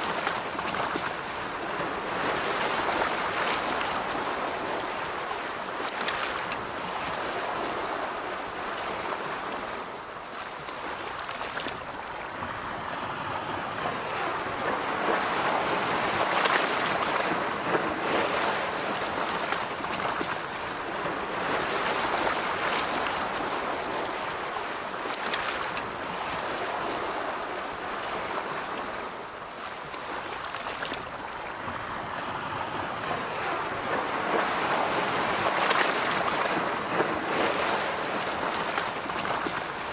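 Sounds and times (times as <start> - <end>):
ocean waves breaking on beach: 0.0 - 39.9.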